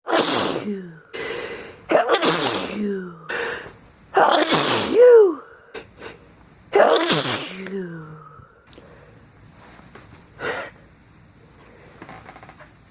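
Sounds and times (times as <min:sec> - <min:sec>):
person sneezing: 0:00.0 - 0:08.3
sharp breaths: 0:01.1 - 0:01.9.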